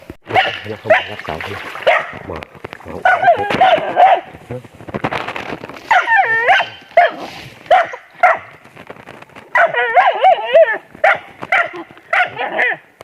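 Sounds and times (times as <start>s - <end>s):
dog yelping and whining: 5.9s - 8.0s, 9.6s - 10.8s.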